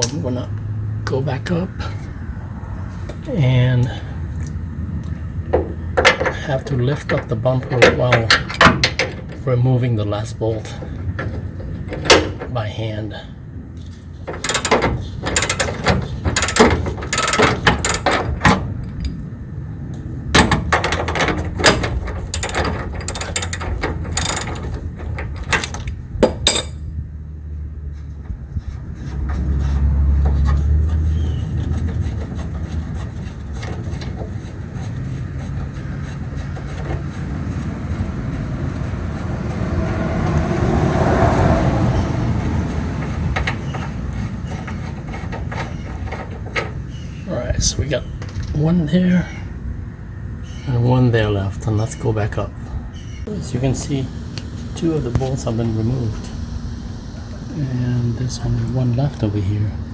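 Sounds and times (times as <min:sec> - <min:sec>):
ratchet wrench clicking: 0:14.4 - 0:18.2, 0:22.3 - 0:24.7.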